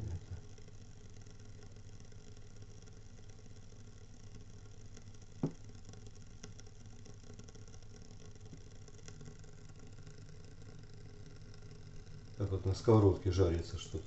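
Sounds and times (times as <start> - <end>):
heating element crackling and clicking: 0.0 - 14.0
low steady hum: 0.0 - 14.0.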